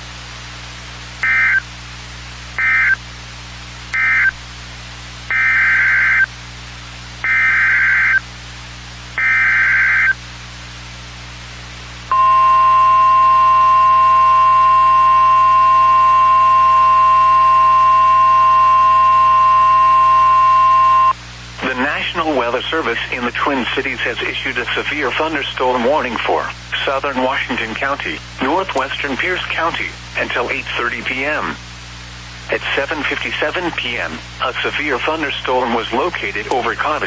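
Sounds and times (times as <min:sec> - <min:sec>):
buzzy data tone bursts: 0:01.2 - 0:01.7, 0:02.6 - 0:03.0, 0:03.9 - 0:04.4, 0:05.3 - 0:06.3, 0:07.2 - 0:08.2, 0:09.2 - 0:10.2
steady warning alarm tone: 0:01.2 - 0:01.7, 0:02.6 - 0:03.0, 0:03.9 - 0:04.4, 0:05.3 - 0:06.3, 0:07.2 - 0:08.2, 0:09.2 - 0:10.2, 0:12.1 - 0:21.2.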